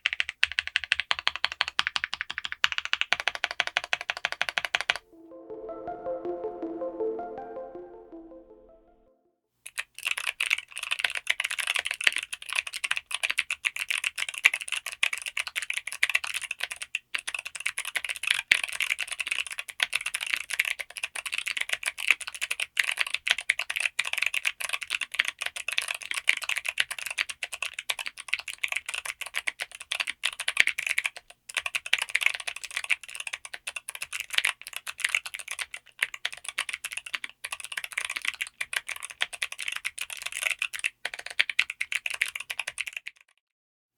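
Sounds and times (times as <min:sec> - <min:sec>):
fast typing on mechanical keyboard: 0:00.0 - 0:05.0, 0:09.7 - 0:43.4.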